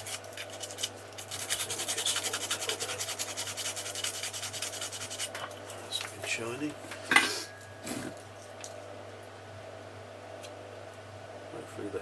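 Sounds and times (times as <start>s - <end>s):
scratchy scrubbing: 0.0s - 5.4s
low steady hum: 0.0s - 12.0s.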